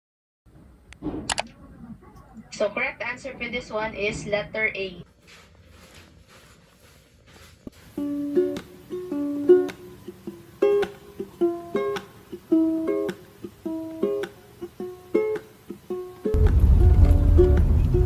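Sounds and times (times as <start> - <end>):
plucked string melody: 8.0 - 18.0.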